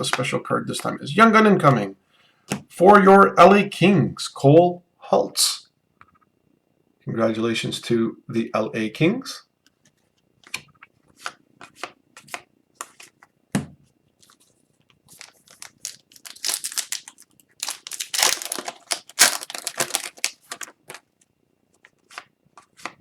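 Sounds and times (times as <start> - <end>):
card wrappers tearing and crinkling: 15.1 - 21.1.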